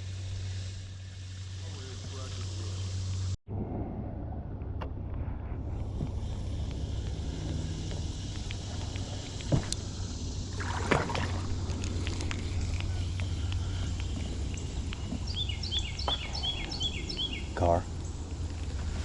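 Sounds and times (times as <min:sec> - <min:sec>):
water: 0:00.0 - 0:03.4, 0:04.0 - 0:13.8
wind: 0:00.0 - 0:19.0
songbird singing: 0:05.7 - 0:19.0.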